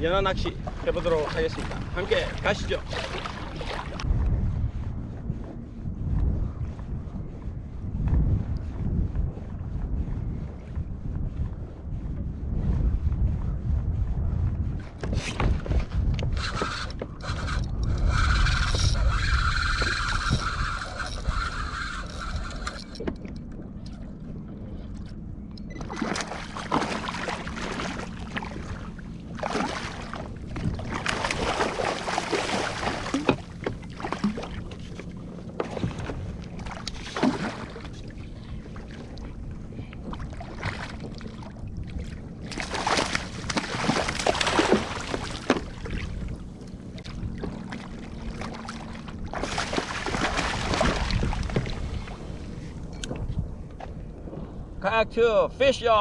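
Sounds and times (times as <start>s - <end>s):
steady low hum: 0.0s - 55.6s
water splashing against boat hull: 0.3s - 4.0s, 25.6s - 52.4s.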